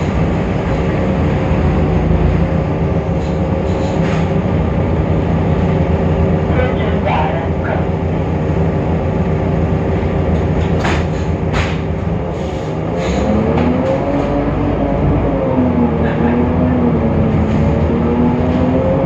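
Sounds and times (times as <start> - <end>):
bus diesel engine under load: 0.0 - 19.0
sharp knocks and rattles: 10.3 - 12.1.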